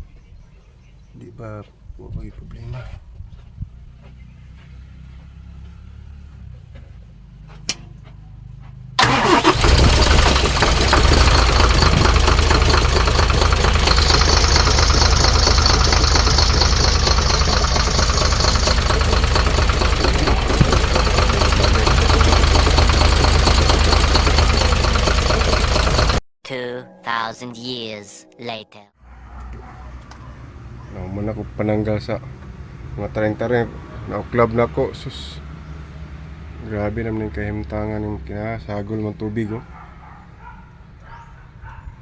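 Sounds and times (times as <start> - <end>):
diesel engine running: 9.0 - 26.2.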